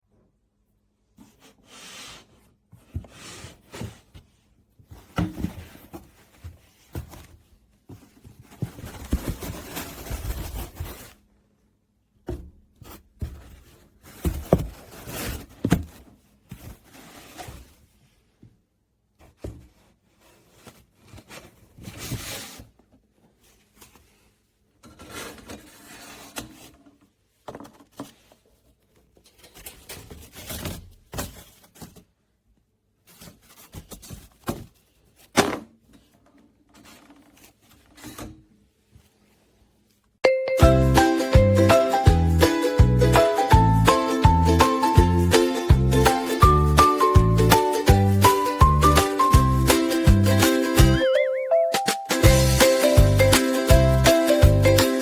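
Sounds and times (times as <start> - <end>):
objects knocking and scraping: 12.3 - 16.8.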